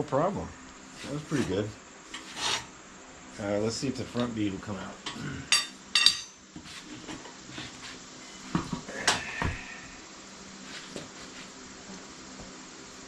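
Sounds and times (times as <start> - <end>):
tire tools clanking on metal: 5.0 - 6.4.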